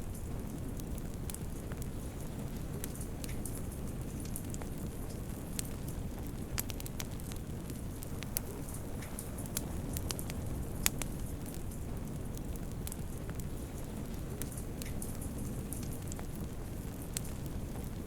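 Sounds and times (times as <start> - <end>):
wood fire crackling: 0.0 - 18.0.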